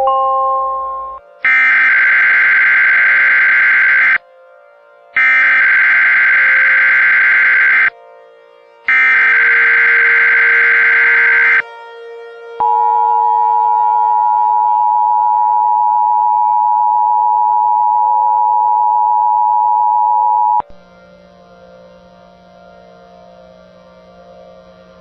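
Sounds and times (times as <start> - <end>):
harsh digital data screech: 1.7 - 4.2, 5.3 - 7.9, 8.9 - 11.6
two-tone attention signal: 8.9 - 11.6, 12.6 - 20.8.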